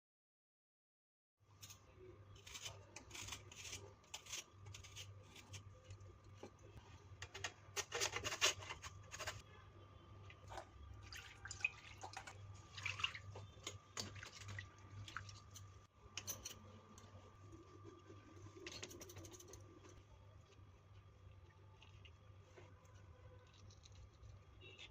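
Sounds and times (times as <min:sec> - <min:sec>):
dripping water: 0:10.3 - 0:15.6.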